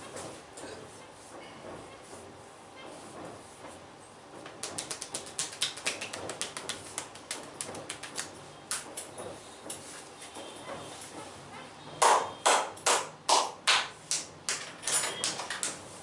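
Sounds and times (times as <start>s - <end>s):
hands tapping and slapping body: 4.4s - 9.1s, 12.0s - 15.9s.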